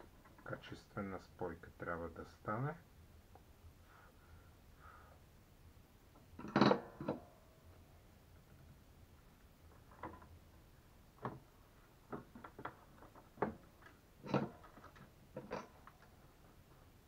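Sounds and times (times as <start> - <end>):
small metal parts and tools clicking: 12.1 - 16.2.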